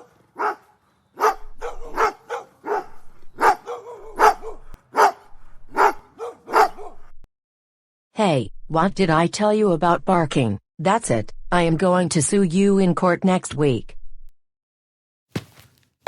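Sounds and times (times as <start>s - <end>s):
dog barking: 0.0s - 7.1s.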